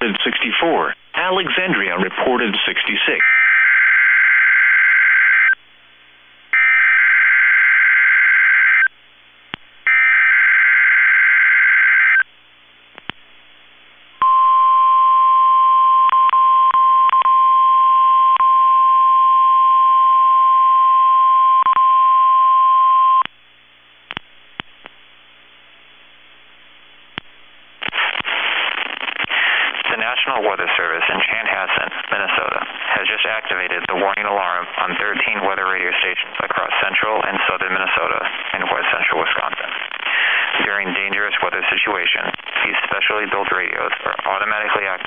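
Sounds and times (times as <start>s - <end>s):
steady warning alarm tone: 3.2s - 5.6s, 6.6s - 8.9s, 9.9s - 12.2s.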